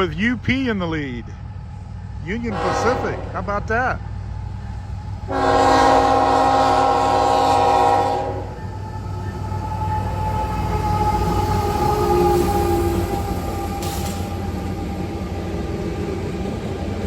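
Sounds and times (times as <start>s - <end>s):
train rumbling: 0.0s - 17.0s
locomotive air horn chord: 2.5s - 3.4s, 5.3s - 8.6s.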